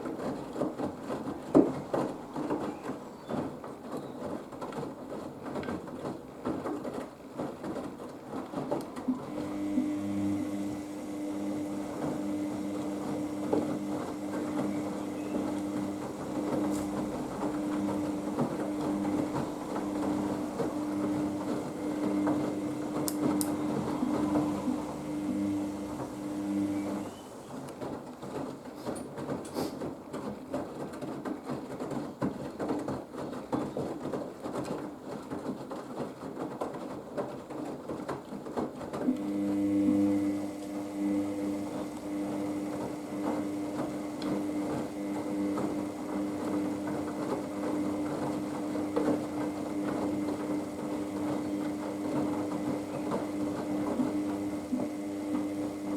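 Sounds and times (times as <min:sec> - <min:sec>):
laundry sloshing in drum: 0:00.0 - 0:09.7
washing machine motor hum: 0:00.0 - 0:30.5, 0:37.9 - 0:55.9.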